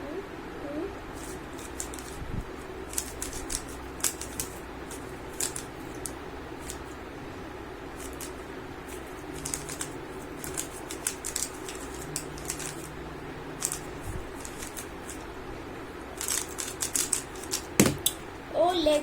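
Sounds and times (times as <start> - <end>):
puzzle cube layers clicking: 9.4 - 12.9.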